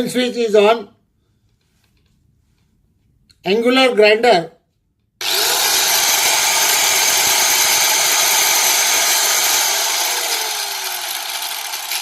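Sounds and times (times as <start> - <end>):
angle grinder whirring: 5.2 - 12.0.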